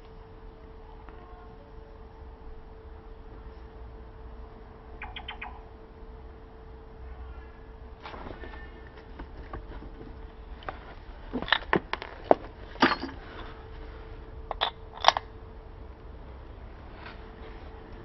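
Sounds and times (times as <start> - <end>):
faint steady hum: 0.0 - 18.0
metal tools clicking and knocking: 12.8 - 13.2, 14.5 - 15.3.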